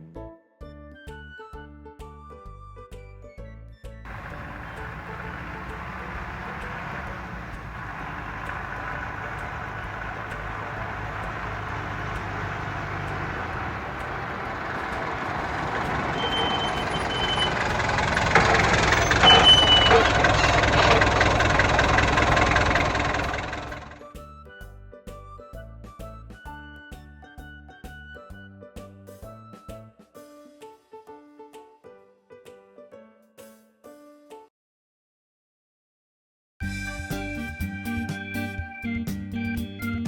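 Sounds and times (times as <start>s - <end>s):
vehicle engine running: 4.1s - 24.1s
brief high squeals: 16.1s - 17.7s, 18.8s - 20.8s.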